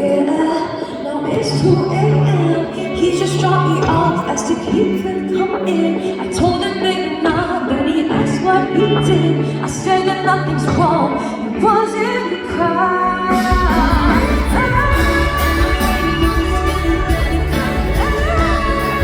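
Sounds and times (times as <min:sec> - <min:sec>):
woman singing with band: 0:00.0 - 0:19.0
heavy bass line: 0:13.2 - 0:19.0.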